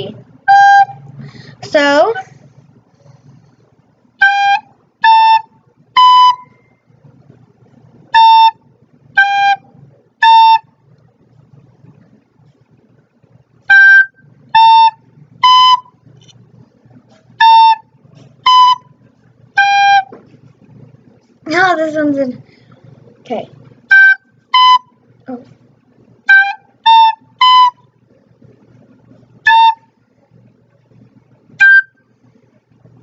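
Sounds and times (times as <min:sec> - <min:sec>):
recorder playing simple tune: 0:00.5 - 0:01.1, 0:04.2 - 0:06.6, 0:08.1 - 0:10.7, 0:13.7 - 0:16.0, 0:17.4 - 0:19.0, 0:19.6 - 0:20.2, 0:23.9 - 0:25.0, 0:26.2 - 0:27.9, 0:29.4 - 0:29.9, 0:31.6 - 0:32.0.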